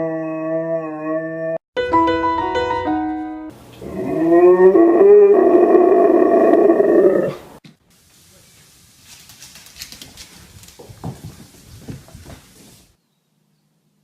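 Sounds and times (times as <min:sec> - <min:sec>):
dog howling: 0:00.0 - 0:01.6
piano notes: 0:01.8 - 0:03.7.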